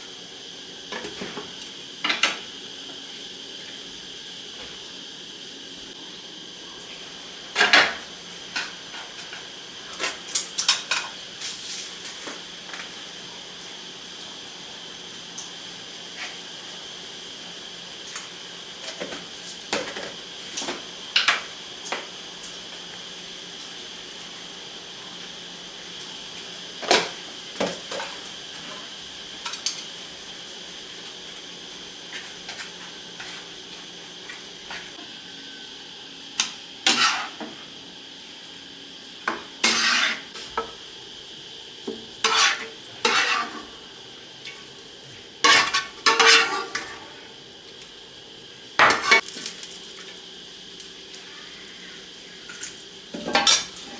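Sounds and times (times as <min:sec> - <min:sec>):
metal utensils clinking on dishes: 0:52.5 - 0:53.9.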